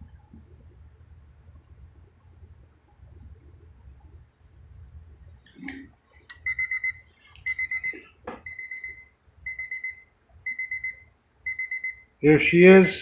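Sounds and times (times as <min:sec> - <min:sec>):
alarm clock beeping: 0:06.4 - 0:12.1.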